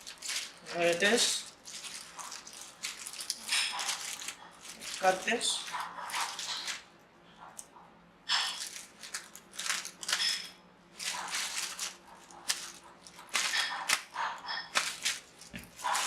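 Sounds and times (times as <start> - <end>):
packaging crinkling and rustling: 0.0 - 6.9, 8.3 - 16.0.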